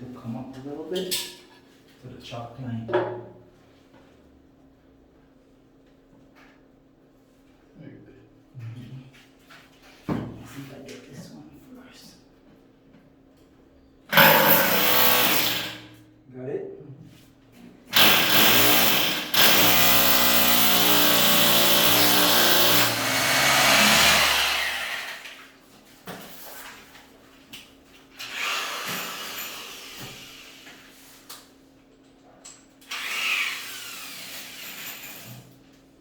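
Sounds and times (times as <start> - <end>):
power drill running under load: 14.1 - 15.9, 17.9 - 25.4, 32.8 - 35.3.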